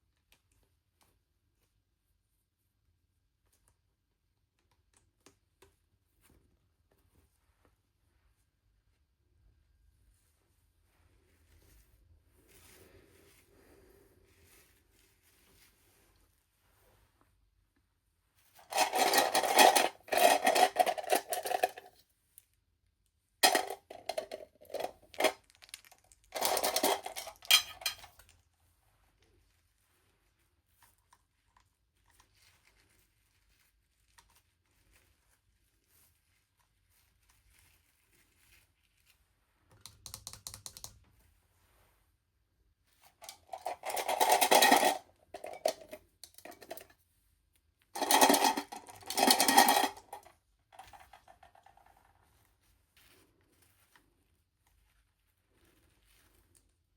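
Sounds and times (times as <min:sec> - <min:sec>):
plastic packaging crinkling: 0:24.7 - 0:27.6.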